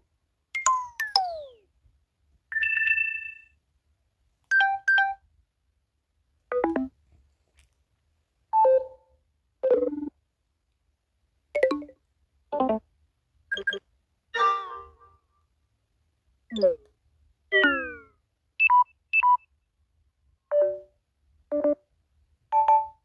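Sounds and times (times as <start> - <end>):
falling chirps: 2.5 - 3.5.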